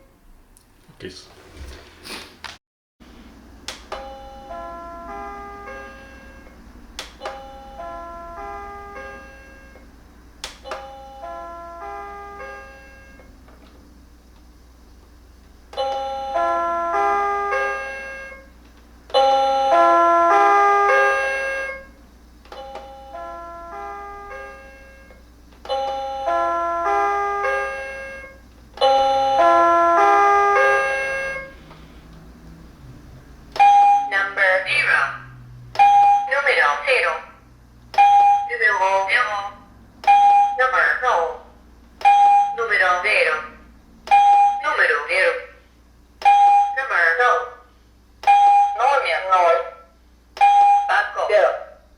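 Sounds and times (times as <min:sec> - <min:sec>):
electronic chime melody: 0:04.0 - 0:06.5, 0:07.2 - 0:09.8, 0:22.6 - 0:29.8.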